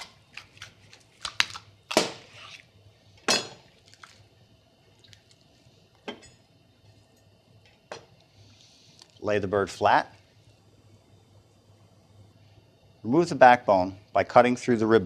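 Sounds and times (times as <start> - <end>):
bone cracking and crunching: 0.0 - 2.4, 3.8 - 4.2.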